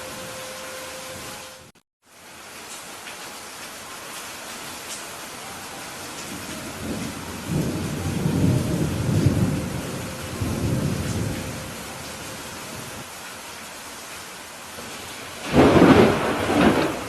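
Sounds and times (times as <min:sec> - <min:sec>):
steady rain: 0:00.0 - 0:17.0
thunder rumble: 0:06.1 - 0:13.0, 0:14.9 - 0:17.0.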